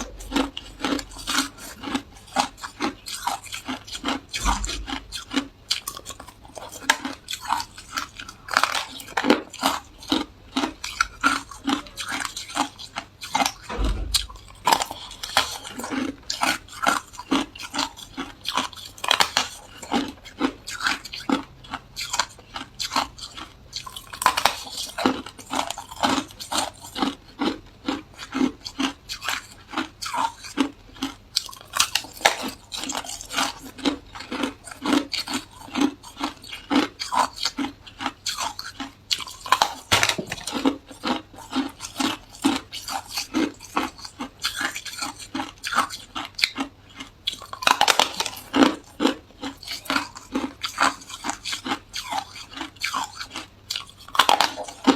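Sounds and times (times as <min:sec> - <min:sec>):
person chewing ice: 0:00.0 - 0:54.9
low thump: 0:04.4 - 0:05.0, 0:13.7 - 0:14.4.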